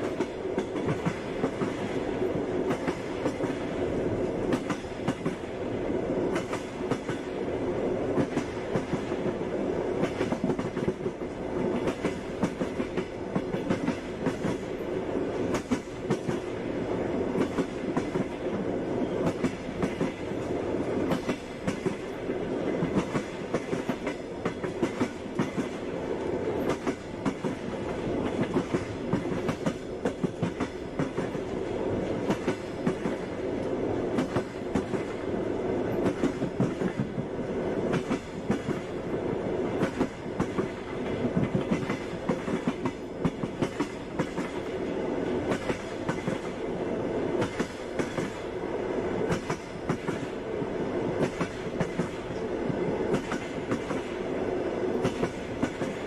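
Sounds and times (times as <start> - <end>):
wheels clickety-clack: 0.0 - 1.9, 2.7 - 3.6, 4.5 - 5.5, 6.3 - 7.3, 8.2 - 9.3, 10.0 - 14.8, 15.4 - 16.5, 17.4 - 18.6, 19.2 - 25.9, 26.6 - 31.5, 32.1 - 35.2, 35.9 - 38.9, 39.8 - 44.7, 45.4 - 46.6, 47.4 - 48.4, 49.3 - 50.4, 51.2 - 54.2, 55.0 - 56.0
train rolling rumble: 0.0 - 56.0.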